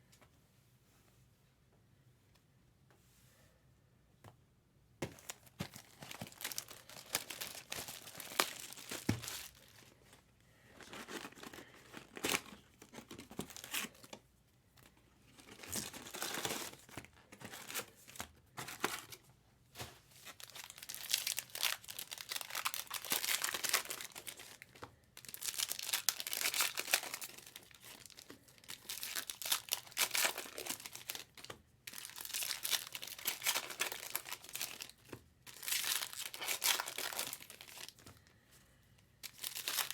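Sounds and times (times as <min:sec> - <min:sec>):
foil wrappers tearing and crinkling: 0:05.2 - 0:09.9, 0:15.4 - 0:18.0, 0:20.2 - 0:38.0, 0:39.2 - 0:39.9.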